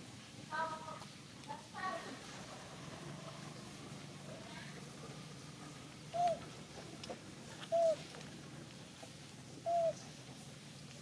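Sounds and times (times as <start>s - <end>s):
animal calls: 9.7s - 10.1s.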